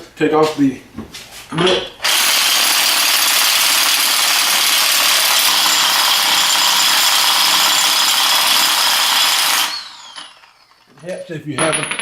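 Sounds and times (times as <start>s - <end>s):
impact gun whirring: 2.0s - 10.9s.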